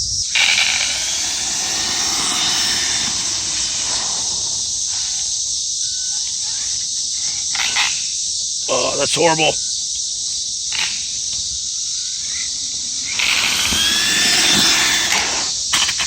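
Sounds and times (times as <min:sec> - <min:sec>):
crickets hissing: 0:00.0 - 0:16.0
toy truck electric motor whining: 0:00.3 - 0:05.5, 0:12.0 - 0:16.0.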